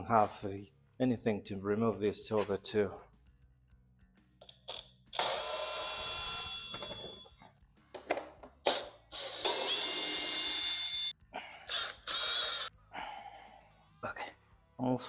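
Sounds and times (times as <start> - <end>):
electric power tool whining: 5.2 - 7.4, 8.7 - 11.1, 11.7 - 12.7.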